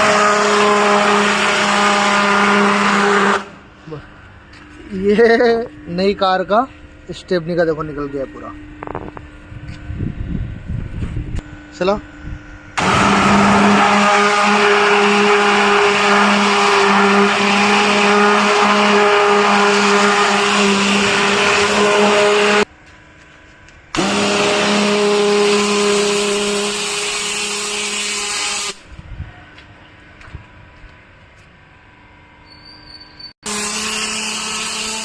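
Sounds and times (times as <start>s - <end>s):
pump humming: 11.4s - 22.9s
pressure washer spray hissing: 12.8s - 22.6s, 24.0s - 28.8s.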